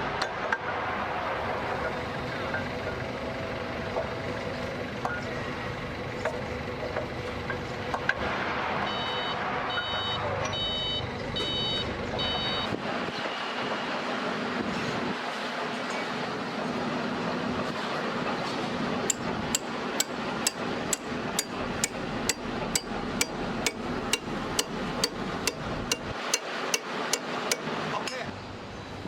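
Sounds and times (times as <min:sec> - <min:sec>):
warning beeper beeps: 0:08.9 - 0:12.7
pile-driving rig engine running: 0:17.6 - 0:28.3.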